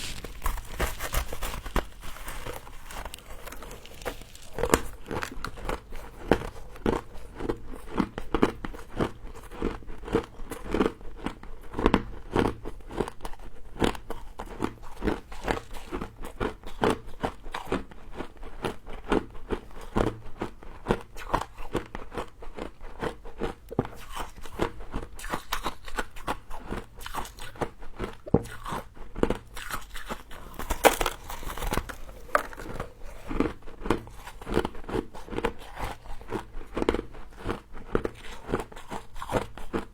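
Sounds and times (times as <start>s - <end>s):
person crunching frost: 0.0s - 9.2s, 28.5s - 39.9s.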